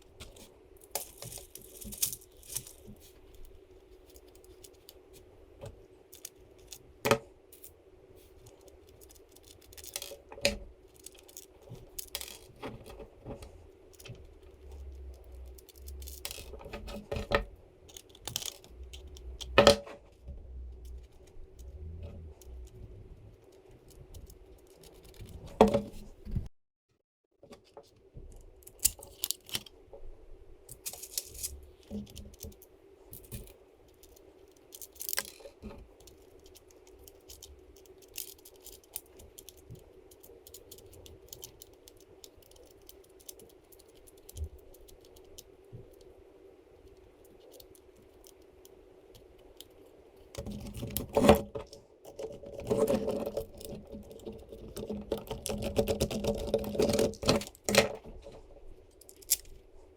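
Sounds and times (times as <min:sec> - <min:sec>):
small hard parts clicking and rattling: 0:00.0 - 0:26.5, 0:30.7 - 0:59.7
steady low hum: 0:00.0 - 0:26.5.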